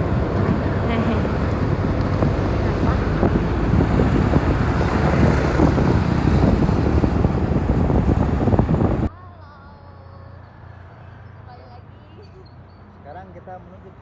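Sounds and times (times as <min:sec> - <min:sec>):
wind buffeting microphone: 0:00.0 - 0:09.1.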